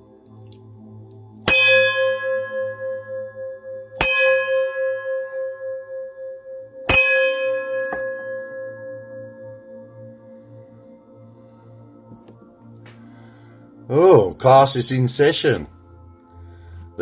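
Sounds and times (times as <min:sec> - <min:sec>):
metal bell ringing: 0:01.5 - 0:02.8, 0:04.0 - 0:05.4, 0:06.9 - 0:08.6.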